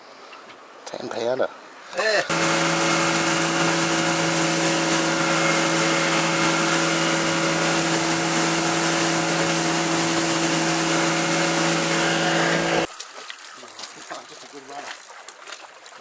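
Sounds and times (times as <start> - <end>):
boat motor running: 2.3 - 12.9.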